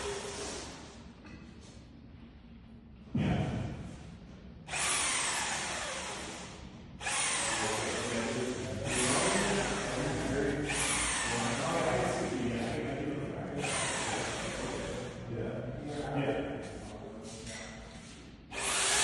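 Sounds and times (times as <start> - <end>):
power drill whining: 4.7 - 12.3, 13.6 - 15.2, 18.5 - 19.0.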